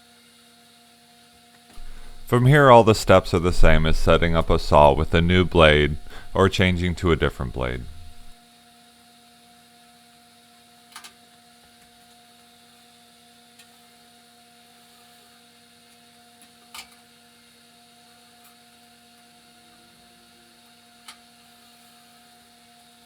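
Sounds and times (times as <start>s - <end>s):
faint electrical hum: 1.8s - 8.3s.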